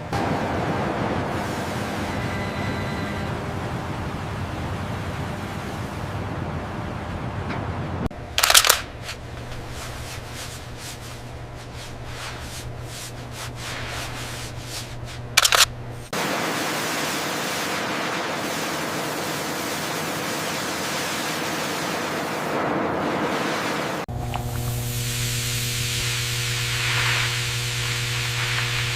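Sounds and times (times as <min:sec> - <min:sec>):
low steady hum: 0:02.0 - 0:16.1
steady loud hiss: 0:08.2 - 0:28.9
sharp bursts of hiss: 0:24.7 - 0:28.9.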